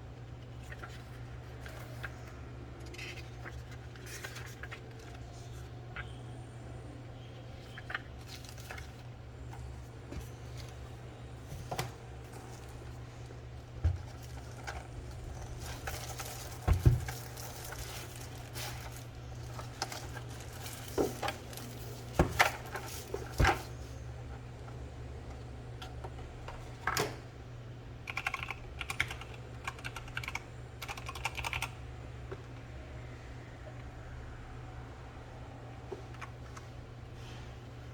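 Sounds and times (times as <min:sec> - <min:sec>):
low steady hum: 0:00.0 - 0:37.9
mechanical keyboard typing: 0:28.1 - 0:31.8.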